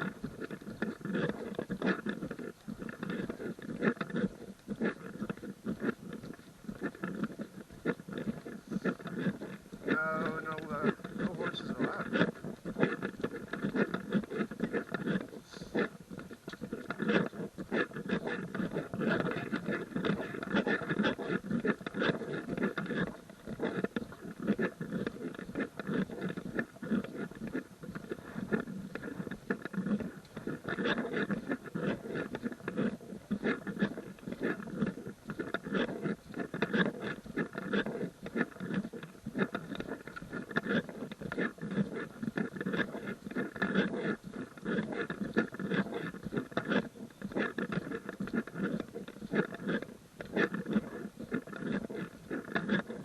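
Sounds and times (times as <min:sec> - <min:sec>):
footsteps crunching on gravel: 0:07.3 - 0:21.2.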